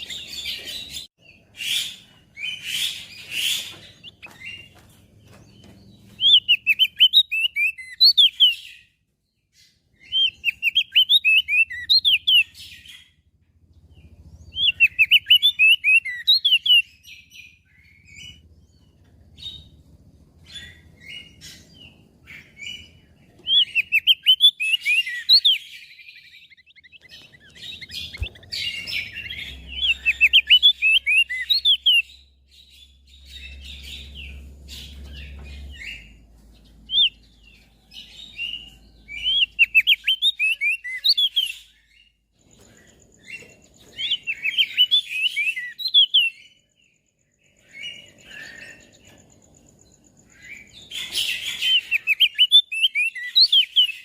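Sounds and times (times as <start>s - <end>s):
bird chirping high notes: 23.5s - 36.2s.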